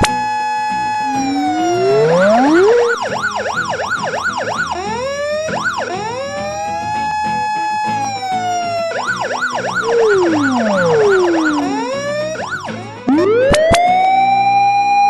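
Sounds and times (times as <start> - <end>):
emergency vehicle siren: 0.4 - 15.0
second siren tone: 0.8 - 5.3, 9.3 - 15.0.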